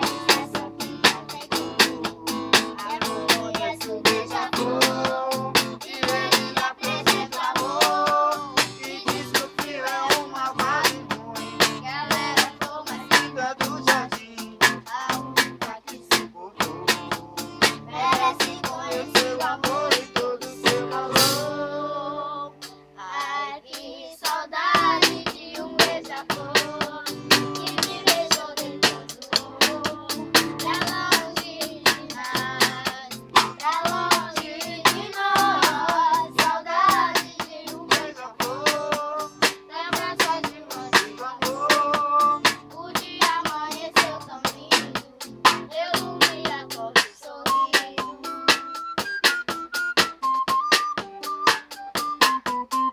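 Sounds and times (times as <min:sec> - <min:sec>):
quick drum strokes: 0:00.0 - 0:21.6, 0:23.8 - 0:52.9
young voices singing together: 0:00.0 - 0:48.8.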